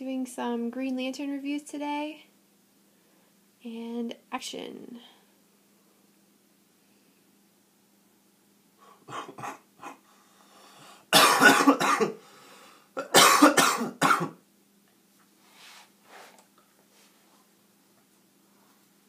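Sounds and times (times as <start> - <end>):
person coughing: 9.0 - 10.0, 11.1 - 12.2, 13.0 - 14.4.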